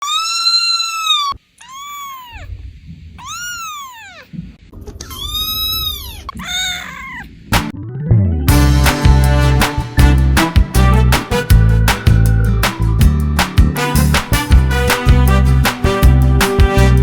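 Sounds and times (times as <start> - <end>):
kitten meowing: 0.0 - 2.5, 3.2 - 4.3, 5.0 - 7.3
music with a beat: 8.5 - 17.0.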